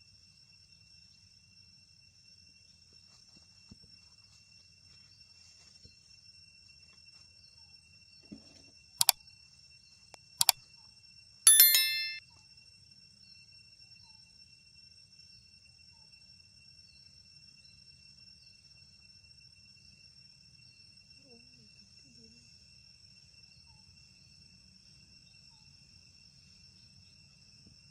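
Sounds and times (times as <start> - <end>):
bell-like ding: 11.5 - 12.2
sharp clicks: 11.5 - 12.2.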